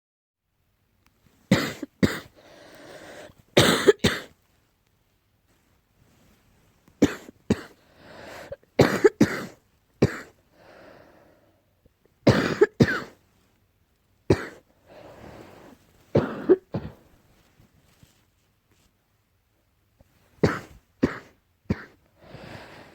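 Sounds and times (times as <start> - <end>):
person coughing: 1.5 - 2.4, 3.6 - 4.3, 7.0 - 7.8, 8.5 - 10.4, 12.3 - 13.2, 14.3 - 14.6, 16.2 - 17.0, 20.4 - 22.0
noisy breaths drawn in: 2.4 - 3.4, 7.8 - 8.6, 10.5 - 11.6, 14.8 - 16.0, 22.2 - 22.9.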